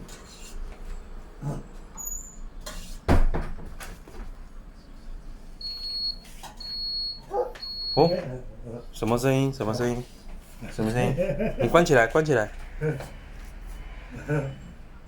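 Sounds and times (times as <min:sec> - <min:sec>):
fridge door alarm beeping: 0:02.0 - 0:02.5, 0:05.6 - 0:08.4
fridge contents knocking and rattling: 0:03.1 - 0:04.4.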